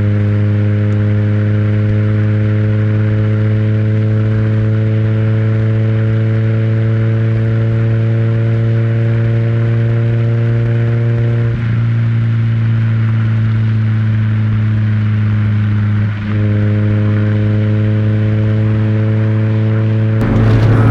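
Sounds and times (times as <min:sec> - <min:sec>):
car engine droning while driving: 0:20.2 - 0:20.9.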